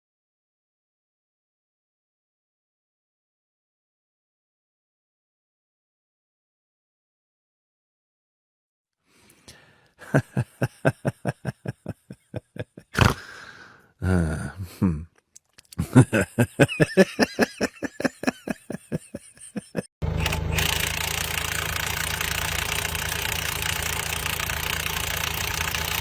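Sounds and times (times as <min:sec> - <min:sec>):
person laughing hard: 0:10.0 - 0:15.1, 0:15.8 - 0:19.9.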